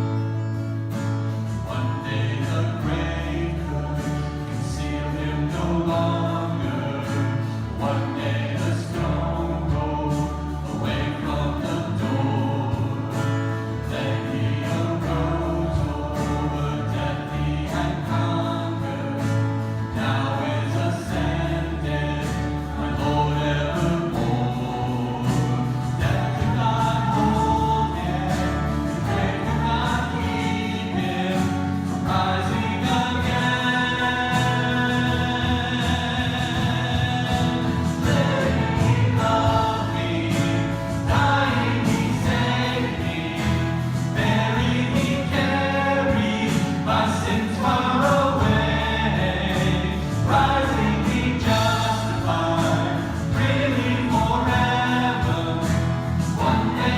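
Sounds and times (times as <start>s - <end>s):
group singing a worship song: 0.0s - 56.9s
instrumental accompaniment: 0.0s - 56.9s
sustained bass notes: 0.0s - 56.9s.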